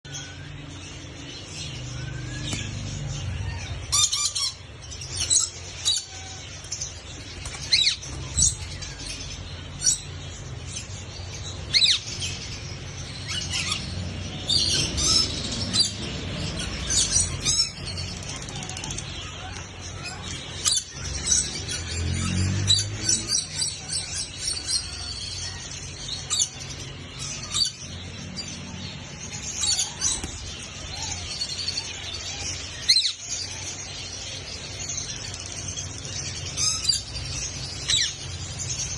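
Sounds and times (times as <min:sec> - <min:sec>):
parakeet shrill calls: 0:01.9 - 0:06.7, 0:07.5 - 0:10.2, 0:11.6 - 0:38.9.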